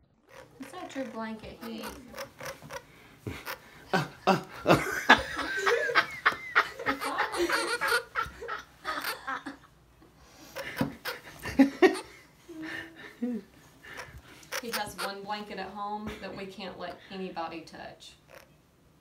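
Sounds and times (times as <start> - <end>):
people laughing: 3.9 - 9.7, 10.6 - 13.4.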